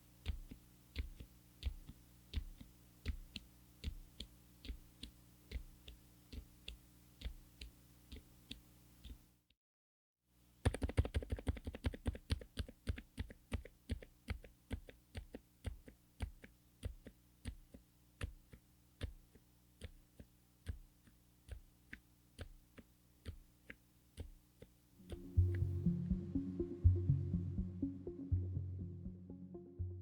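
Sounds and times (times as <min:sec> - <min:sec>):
mechanical keyboard typing: 0:10.6 - 0:19.2.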